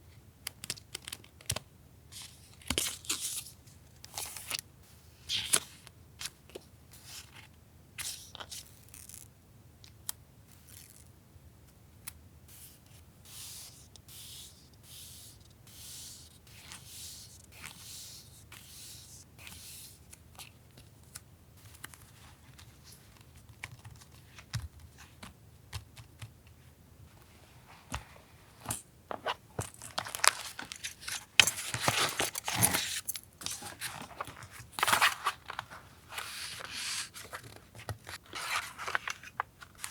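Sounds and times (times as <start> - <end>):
paper rustling: 27.6 - 39.9.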